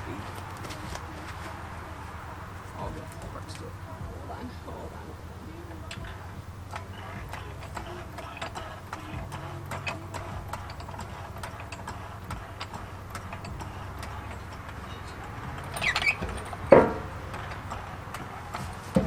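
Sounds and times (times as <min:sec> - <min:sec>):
light metallic ticks and clicks: 0:05.7 - 0:19.0
metal clank: 0:05.8 - 0:19.0.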